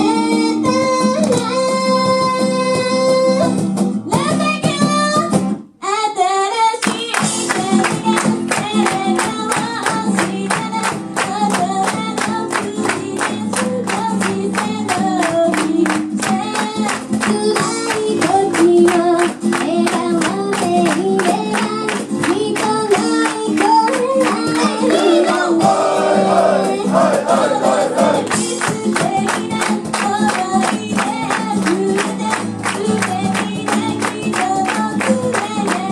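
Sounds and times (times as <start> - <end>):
person singing: 5.8 - 35.9
strummed acoustic guitar: 7.2 - 35.9.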